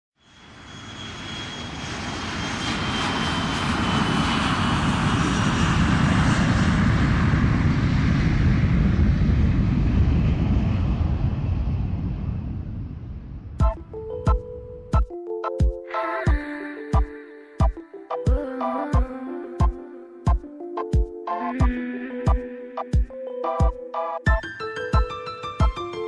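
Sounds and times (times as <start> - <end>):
aircraft engine noise: 0.2 - 14.8.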